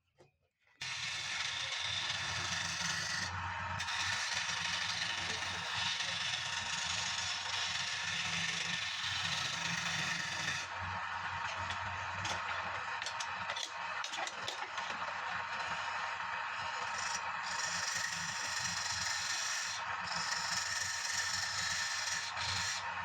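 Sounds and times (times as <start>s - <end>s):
low hum of lathe: 0.8s - 23.0s
turning tool scraping wood: 8.5s - 10.7s, 16.7s - 22.9s.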